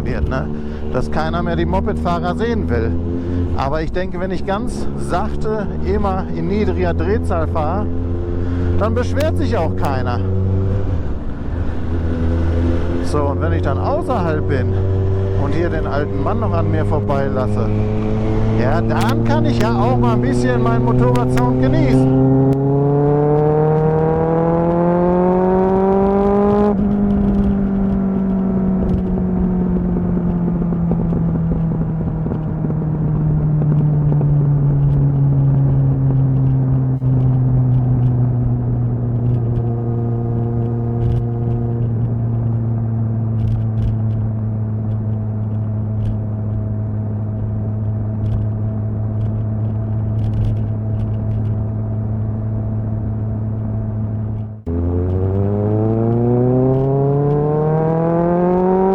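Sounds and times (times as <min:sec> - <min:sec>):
motorcycle engine revving: 0:00.0 - 0:58.9.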